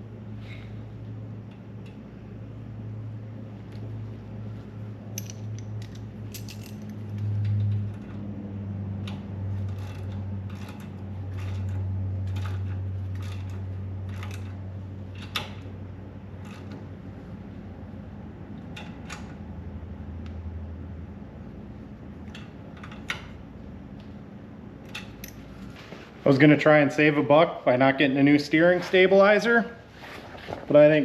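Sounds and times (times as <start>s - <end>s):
steady low hum: 0.0s - 31.0s
metal tools clinking: 5.2s - 7.0s.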